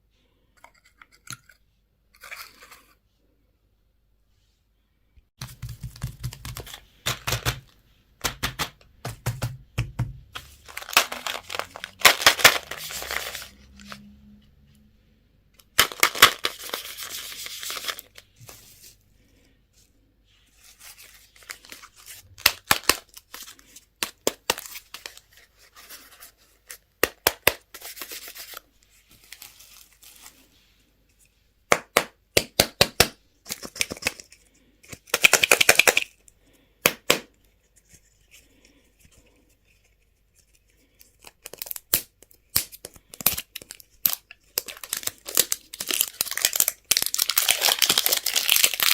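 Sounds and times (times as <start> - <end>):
plastic packaging tearing and crinkling: 10.4 - 14.1, 21.4 - 25.3, 41.2 - 48.9.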